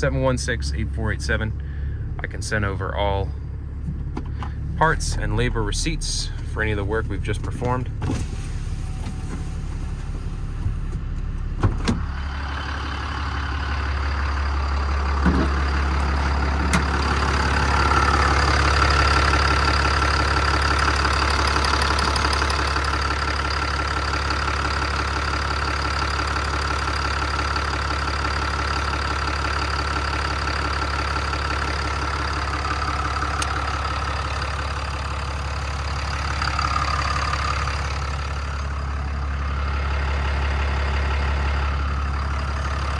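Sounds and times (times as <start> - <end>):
steady whine: 0.0 - 19.4
diesel engine idling: 0.0 - 42.9.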